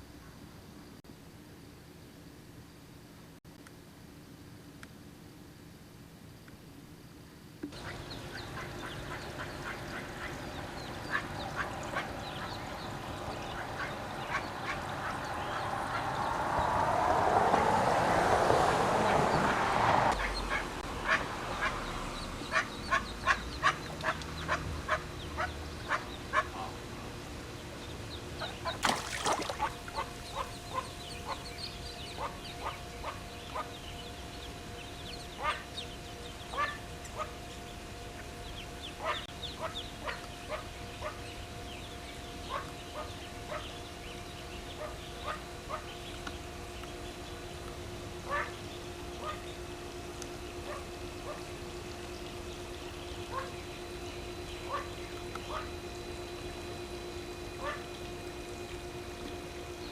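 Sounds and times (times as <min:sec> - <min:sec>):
ducklings peeping: 0:07.8 - 0:16.2, 0:20.2 - 0:26.8, 0:27.5 - 0:47.4, 0:54.4 - 0:55.7.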